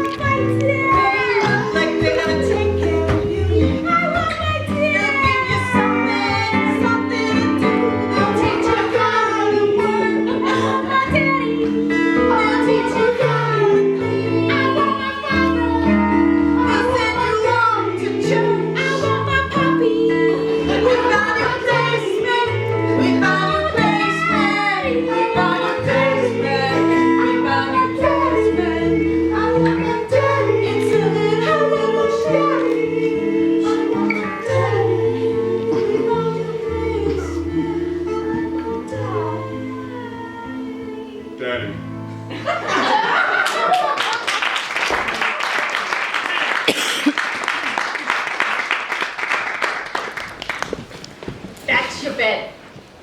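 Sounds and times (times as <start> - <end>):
high singing voice: 0.0 - 41.4.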